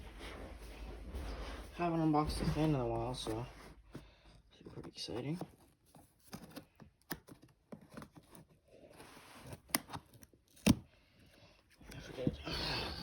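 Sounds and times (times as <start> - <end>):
hands tearing cardboard box: 4.0 - 11.0.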